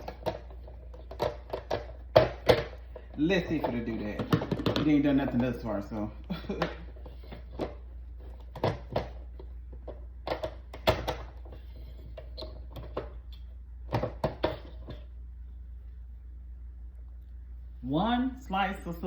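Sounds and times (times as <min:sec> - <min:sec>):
plastic vegetable chopper knocking: 0:00.0 - 0:02.8.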